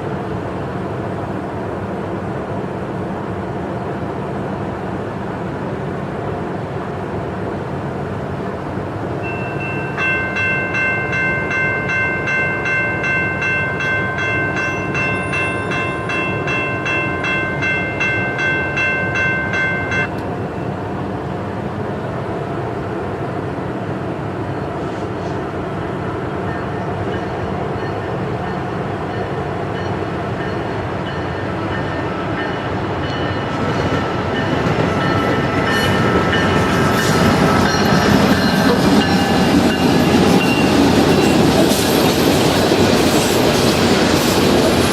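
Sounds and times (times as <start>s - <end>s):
freight train rumble: 0.0s - 44.9s
train wheel squeal: 26.5s - 44.9s.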